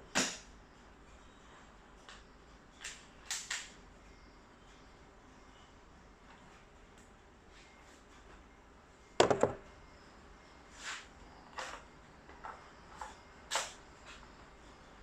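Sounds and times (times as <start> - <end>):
airsoft gun shot snap: 0.1 - 0.5.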